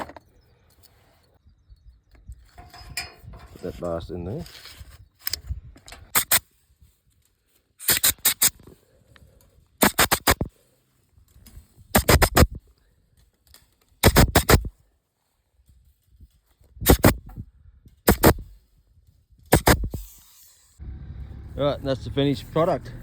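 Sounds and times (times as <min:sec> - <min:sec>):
fencing clip tool clicks: 0:05.2 - 0:06.4, 0:07.8 - 0:08.6, 0:12.0 - 0:12.6, 0:18.1 - 0:18.4.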